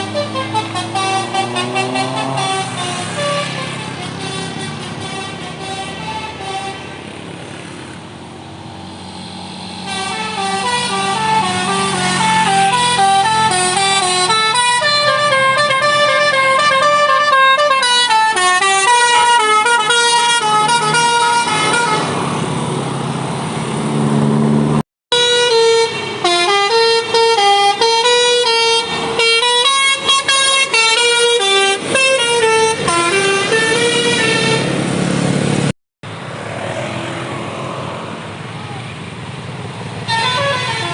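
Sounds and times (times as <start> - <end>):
musical bus air horn tune: 0.0 - 7.0, 9.6 - 22.2, 25.1 - 34.8, 40.0 - 40.9.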